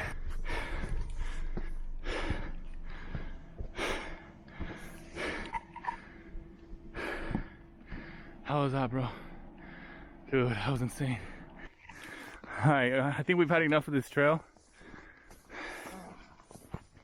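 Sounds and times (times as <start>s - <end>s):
person breathing hard: 0.0s - 8.4s, 9.1s - 10.3s, 14.6s - 17.0s
low hum: 0.0s - 12.6s.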